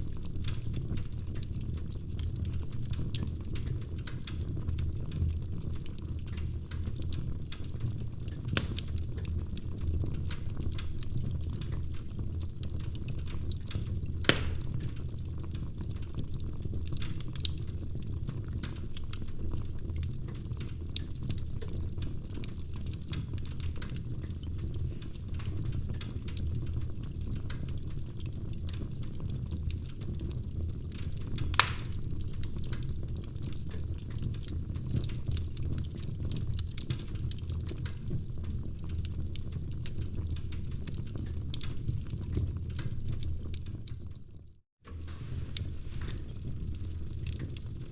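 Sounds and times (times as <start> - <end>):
fire popping: 0.0 - 47.9
wood fire crackling: 0.0 - 47.9.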